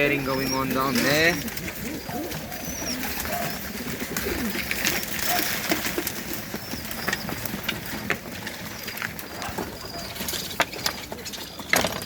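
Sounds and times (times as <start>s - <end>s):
pigeons cooing: 0.0s - 12.0s.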